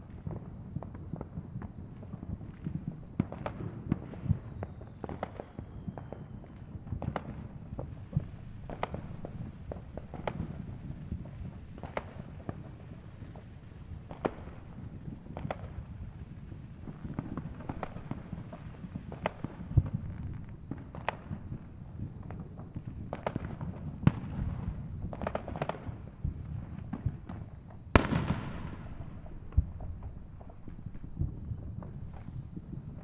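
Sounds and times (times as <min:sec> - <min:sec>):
fireworks popping and crackling: 0:00.0 - 0:33.0
loud firework bang: 0:27.9 - 0:30.1.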